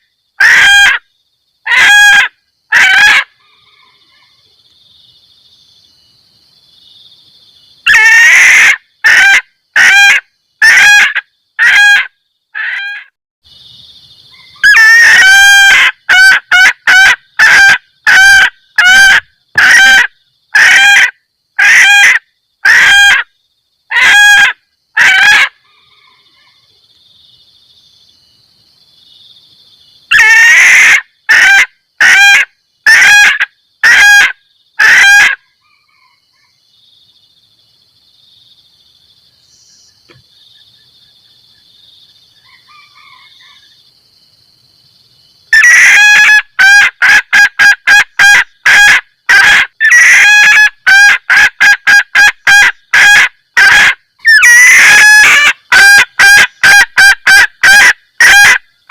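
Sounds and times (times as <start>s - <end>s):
junglefowl cackling call: 0.0s - 4.4s, 7.8s - 13.2s, 14.3s - 23.3s, 23.9s - 26.7s, 30.1s - 36.5s, 42.4s - 43.8s, 45.5s - 58.6s.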